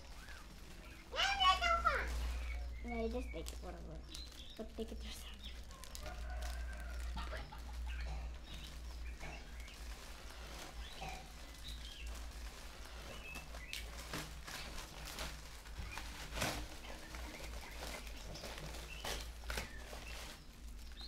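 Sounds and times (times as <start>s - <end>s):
faint high chirping: 0.0s - 12.3s
plastic toys clicking and rustling: 0.0s - 21.0s.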